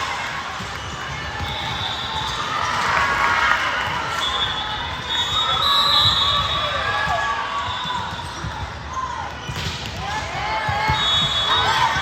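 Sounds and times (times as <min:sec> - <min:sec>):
crowd cheering and shouting: 0:00.0 - 0:12.0.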